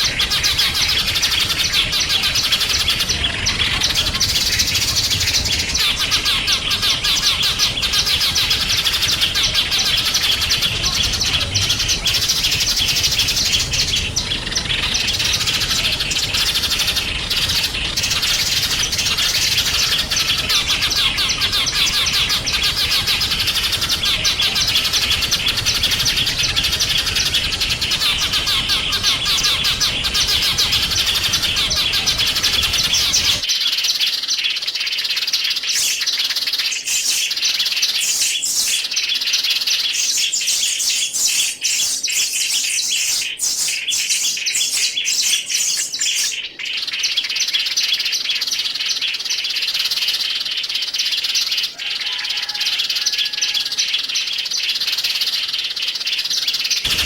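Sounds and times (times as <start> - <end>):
sharp high bird chirps: 0.0 - 34.7, 56.5 - 57.0
songbirds twittering: 0.0 - 57.0.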